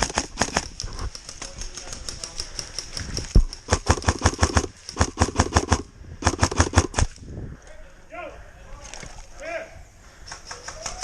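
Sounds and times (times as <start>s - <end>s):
airsoft gun firing bursts: 0.0s - 2.9s, 3.5s - 7.2s.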